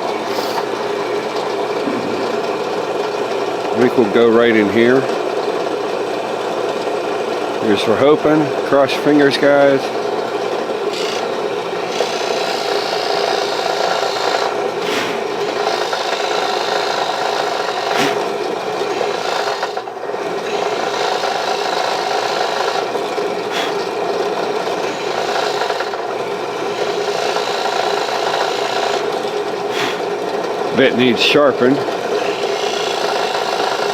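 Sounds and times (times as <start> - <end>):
electric drill grinding into wood: 0.0 - 3.8, 9.5 - 30.6, 31.7 - 33.9.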